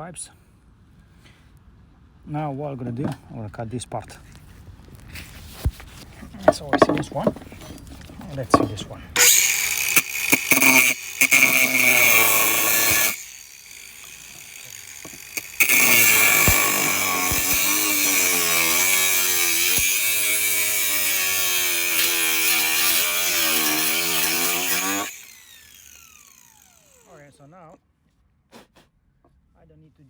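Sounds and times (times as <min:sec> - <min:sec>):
power saw cutting copper pipe: 0:06.2 - 0:27.4.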